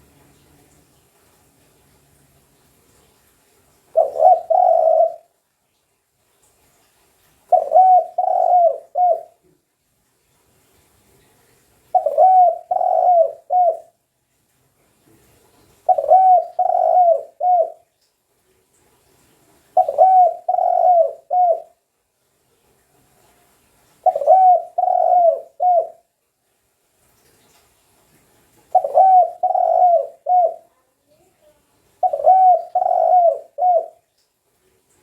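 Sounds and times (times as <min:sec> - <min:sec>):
dove cooing: 0:03.9 - 0:05.3, 0:07.5 - 0:09.4, 0:11.9 - 0:13.9, 0:15.9 - 0:17.8, 0:19.8 - 0:21.8, 0:24.0 - 0:26.1, 0:28.7 - 0:30.7, 0:32.0 - 0:34.0.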